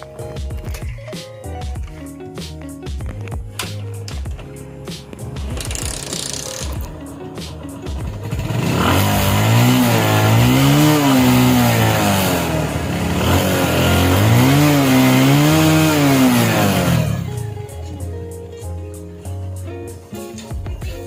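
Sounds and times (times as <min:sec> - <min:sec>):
small motorcycle engine revving: 0:07.5 - 0:17.6.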